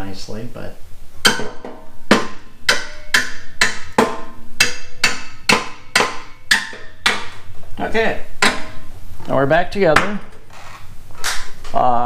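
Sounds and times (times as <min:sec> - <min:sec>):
hammer striking metal pin: 0:01.2 - 0:07.4, 0:08.4 - 0:08.8.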